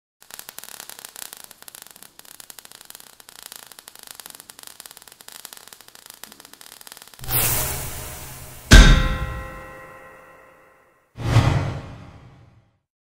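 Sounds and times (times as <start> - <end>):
faint dense crackling noise: 0.2 - 7.2.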